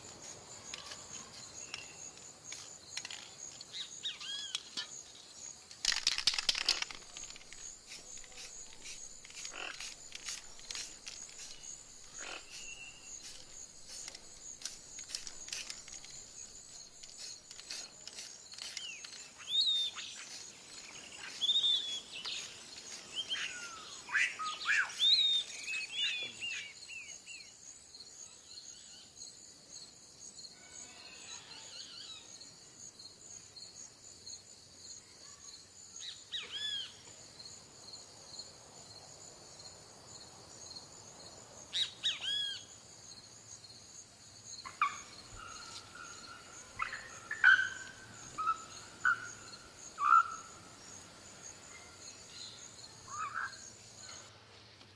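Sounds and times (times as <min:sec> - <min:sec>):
birds calling: 0:06.1 - 0:26.6.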